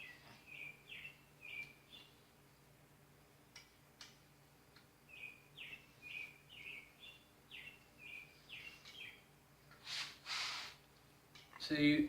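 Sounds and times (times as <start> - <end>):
bird chirping faintly: 0.0 - 2.3, 5.0 - 9.3.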